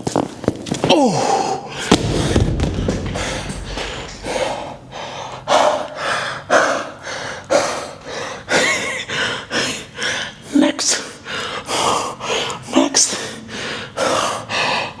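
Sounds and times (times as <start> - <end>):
man breathing hard: 1.0 - 15.0.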